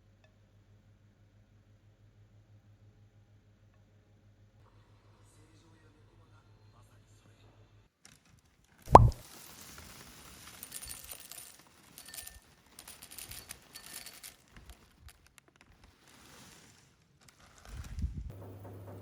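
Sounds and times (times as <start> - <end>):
small objects clicking and clinking: 8.9 - 16.3.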